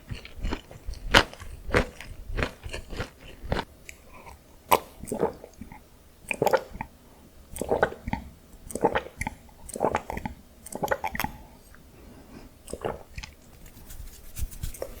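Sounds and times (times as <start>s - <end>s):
close chewing: 0.0s - 4.0s.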